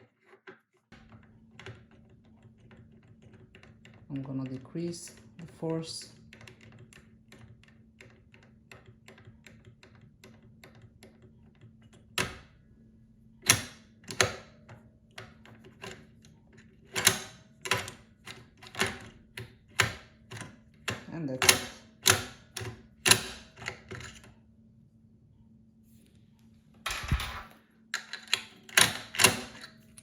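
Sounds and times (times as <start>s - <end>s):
metal clicking of lock tool: 26.9s - 30.0s.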